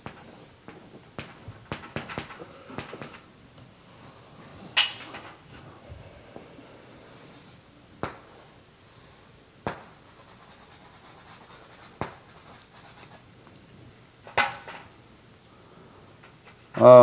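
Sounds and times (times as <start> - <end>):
sharp taps or knocks: 0.0 - 3.2, 9.6 - 10.0.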